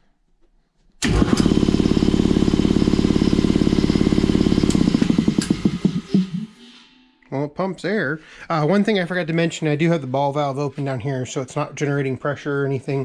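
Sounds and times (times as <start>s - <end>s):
air compressor chugging: 1.0s - 6.6s.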